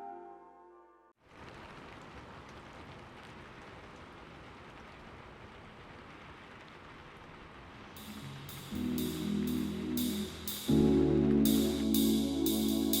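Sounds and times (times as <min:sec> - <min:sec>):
falling water hiss: 0:07.8 - 0:10.8
music track: 0:08.0 - 0:13.0.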